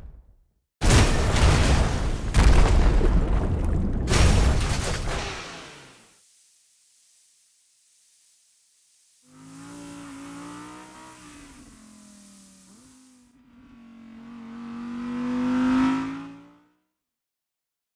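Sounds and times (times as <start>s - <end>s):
car engine running: 9.3s - 15.1s.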